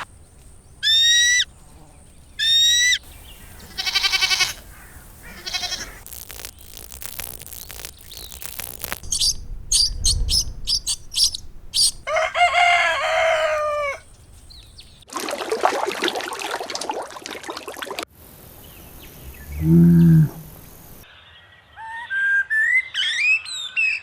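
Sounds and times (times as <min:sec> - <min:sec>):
high downward-sweeping calls: 0:00.0 - 0:15.0
animal hissing: 0:00.8 - 0:09.3
quick repeated chirps: 0:02.4 - 0:12.1
rooster crowing: 0:12.0 - 0:14.1.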